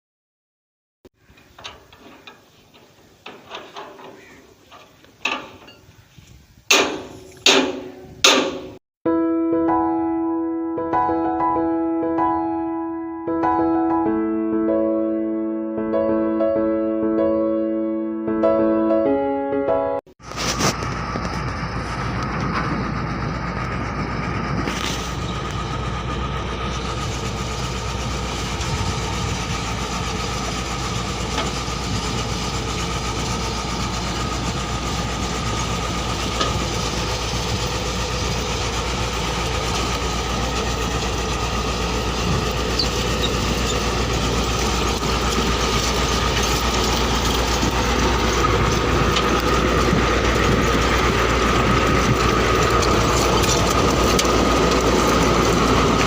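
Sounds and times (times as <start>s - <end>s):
diesel machinery engine drone: 1.2s - 6.1s, 20.2s - 56.0s.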